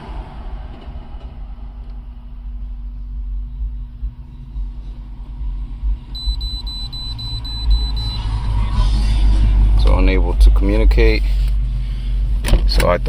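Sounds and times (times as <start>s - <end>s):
steady low rumble: 0.0s - 13.0s
high electronic beeps: 6.1s - 9.9s.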